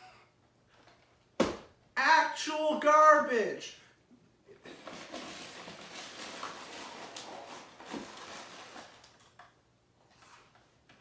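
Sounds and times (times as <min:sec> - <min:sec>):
garbage rustling and crinkling: 0:04.6 - 0:09.4.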